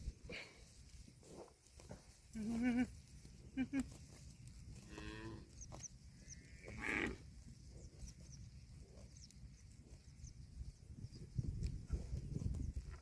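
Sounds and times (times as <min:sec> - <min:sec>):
cow mooing: 0:06.6 - 0:07.2.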